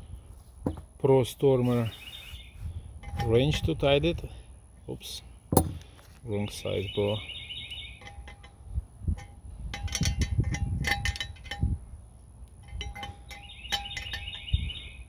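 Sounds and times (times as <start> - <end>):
dull handling knocks: 0.6 - 0.9, 5.5 - 5.9
wrench clinking against metal: 8.0 - 11.8, 12.6 - 14.5.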